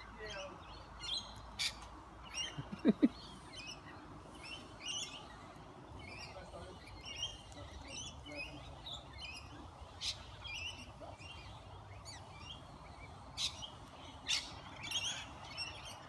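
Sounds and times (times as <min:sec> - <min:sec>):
birds chirping and chattering: 0:00.0 - 0:16.0.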